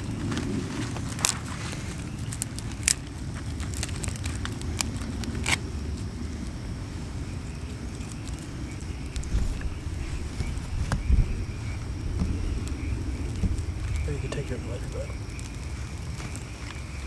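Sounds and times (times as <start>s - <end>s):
dry wood snapping and cracking: 2.2s - 5.7s, 8.8s - 17.0s
low rumble: 9.0s - 16.0s.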